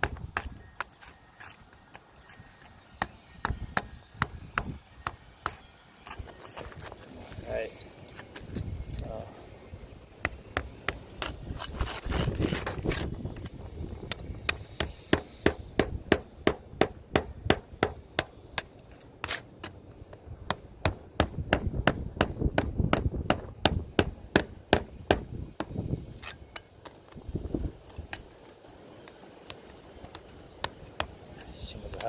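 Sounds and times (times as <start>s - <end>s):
hammer striking with metallic ring: 20.5s - 21.6s.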